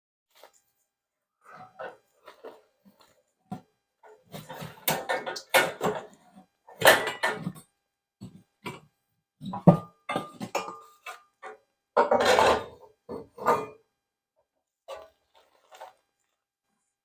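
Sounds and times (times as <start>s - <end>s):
metallic clanks of pipe and tools: 4.0s - 8.8s, 9.4s - 13.8s, 14.9s - 16.0s.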